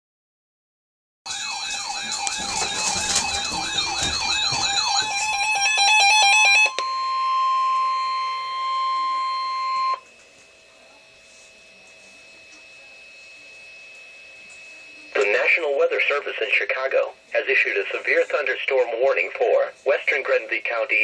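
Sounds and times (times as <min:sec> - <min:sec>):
rapidly alternating beeps: 0:01.3 - 0:10.0
warbling electronic siren: 0:01.3 - 0:10.1
steady alarm tone: 0:01.3 - 0:21.0.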